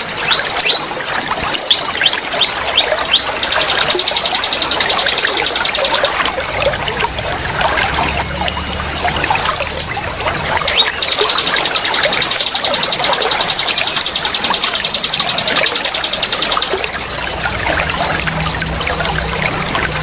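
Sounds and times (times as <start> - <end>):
small birds chirping: 0.0 - 0.9, 1.7 - 6.3, 10.3 - 20.0
trickling water: 0.0 - 20.0
high-pitched pulsing trill: 1.7 - 20.0.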